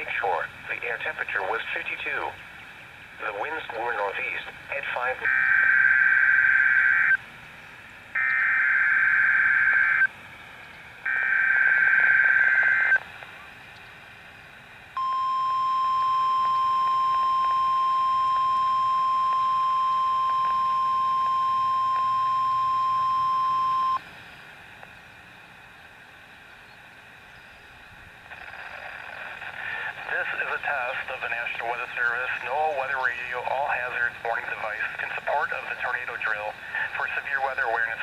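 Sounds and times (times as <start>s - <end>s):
steady warning alarm tone: 8.2s - 10.1s, 11.1s - 13.0s, 15.0s - 24.0s.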